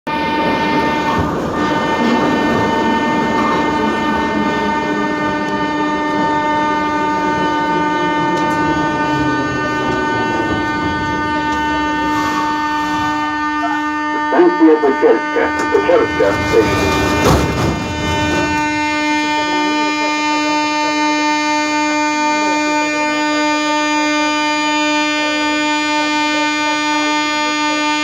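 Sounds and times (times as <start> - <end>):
train rumble and clatter: 0.1 - 28.0
high whine: 14.3 - 17.3
electrical hum: 14.4 - 16.9.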